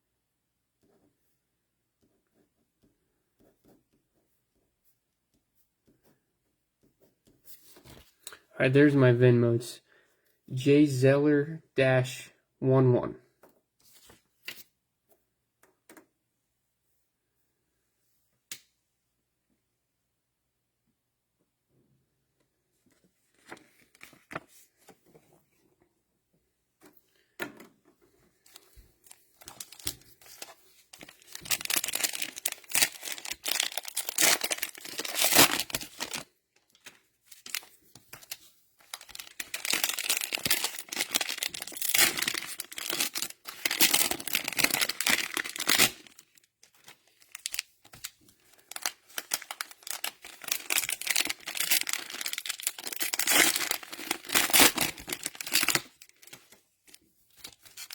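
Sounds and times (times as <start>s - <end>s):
cellophane crinkling and tearing: 28.4s - 57.9s.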